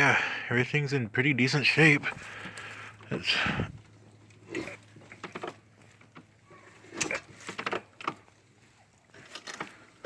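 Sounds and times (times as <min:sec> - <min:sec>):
dirt bike clicks and clunks: 0:05.0 - 0:06.3, 0:06.9 - 0:08.3, 0:09.2 - 0:10.0.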